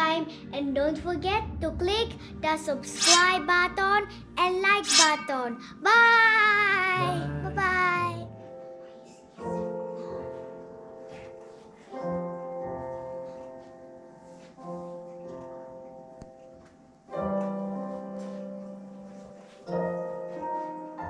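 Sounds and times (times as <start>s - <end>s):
slow piano chords: 5.3s - 21.0s.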